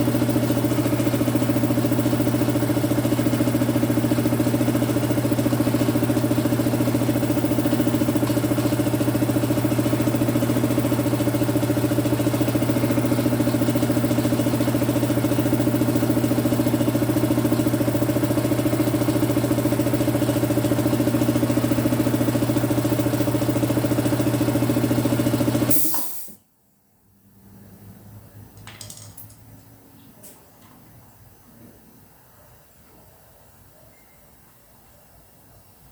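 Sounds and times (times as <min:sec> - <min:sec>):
compressor running: 0:00.0 - 0:26.4.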